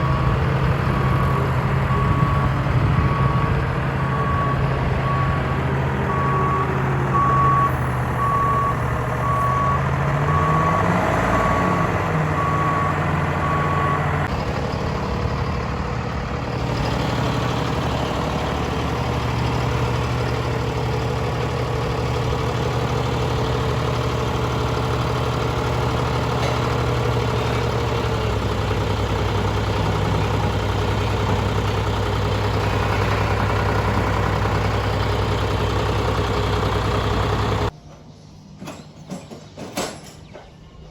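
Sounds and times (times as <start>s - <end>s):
backup alarm beeping: 0.0s - 14.3s
vehicle engine running: 0.0s - 37.7s.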